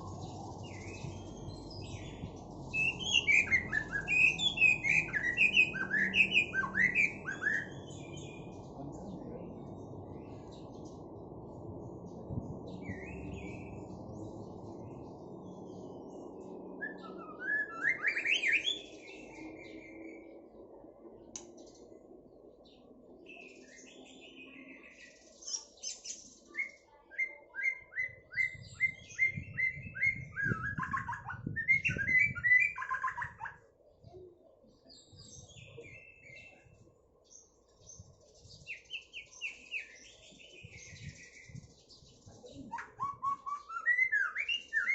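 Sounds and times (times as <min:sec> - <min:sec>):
bird singing whistled phrases: 0:02.8 - 0:08.2, 0:16.8 - 0:19.3, 0:26.0 - 0:33.5, 0:42.5 - 0:44.9.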